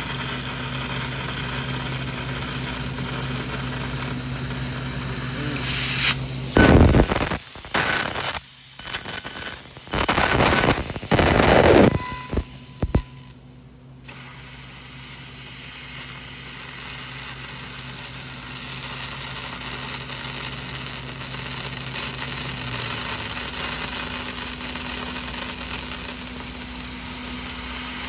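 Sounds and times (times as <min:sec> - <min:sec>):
laser cutter hissing: 0:00.0 - 0:13.3.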